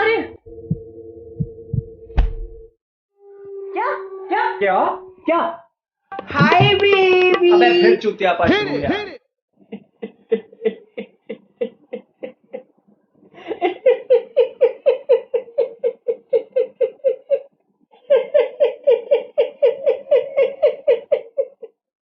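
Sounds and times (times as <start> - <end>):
person laughing: 13.4 - 21.8.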